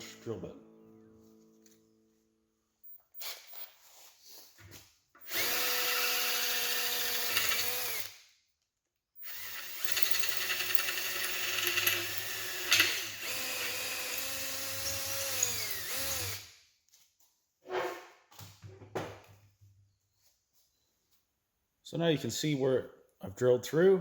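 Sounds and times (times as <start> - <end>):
battery drill drilling rivet: 5.2 - 8.2, 9.2 - 16.5.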